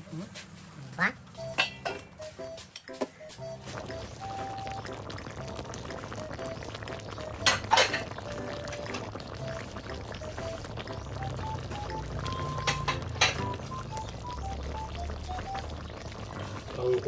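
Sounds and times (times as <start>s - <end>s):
curry bubbling in a pot: 3.6s - 17.0s.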